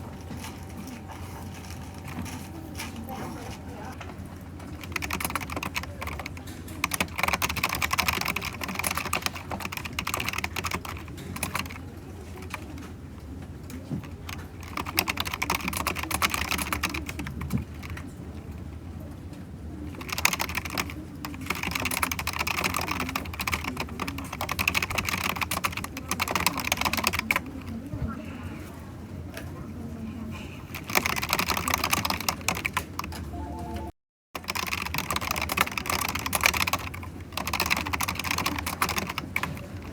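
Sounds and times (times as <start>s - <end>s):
steady low hum: 0.0s - 12.3s
keyboard typing clicks: 4.6s - 12.9s, 20.0s - 27.7s, 30.8s - 39.9s.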